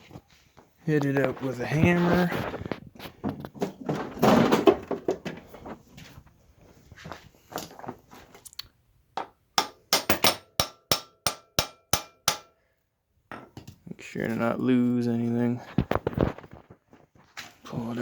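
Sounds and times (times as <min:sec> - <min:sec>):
hammer striking metal: 0:09.2 - 0:12.6.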